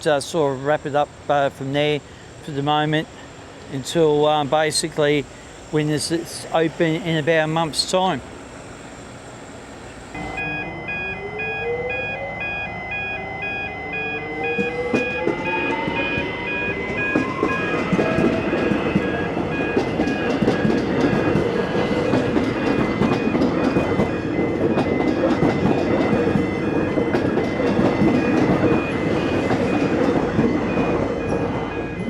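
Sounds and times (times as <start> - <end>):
electric train passing: 0.0 - 32.0
high electronic beep: 10.1 - 32.0
wheels clattering over rails: 14.9 - 32.0.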